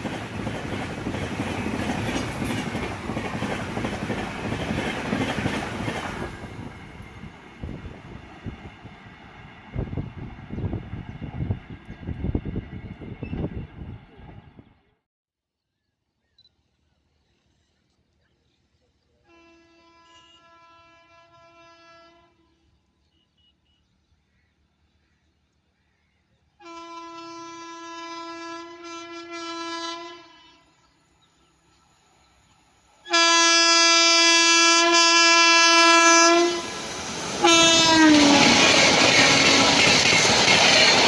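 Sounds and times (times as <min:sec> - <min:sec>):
rush of passing train: 0:00.0 - 0:14.9, 0:26.7 - 0:41.0
locomotive horn blasts: 0:19.3 - 0:22.5, 0:26.6 - 0:30.7, 0:33.1 - 0:36.7, 0:37.4 - 0:39.8.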